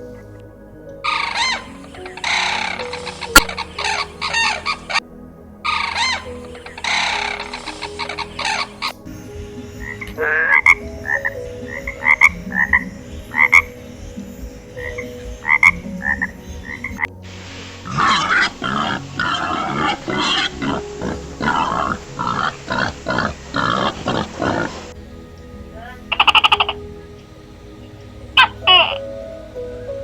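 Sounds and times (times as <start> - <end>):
animal chirping calls: 1.0 - 5.0, 5.7 - 25.0, 25.8 - 26.8
rapid rasping pulsed calls: 1.0 - 30.0.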